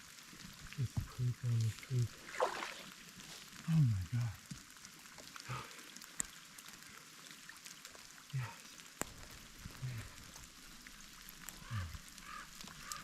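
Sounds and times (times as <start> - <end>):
rain hiss: 0.0 - 13.0
man saying yes breathily: 0.8 - 2.1, 3.7 - 4.4, 5.5 - 5.8, 8.4 - 8.7, 9.8 - 10.2, 11.6 - 12.0.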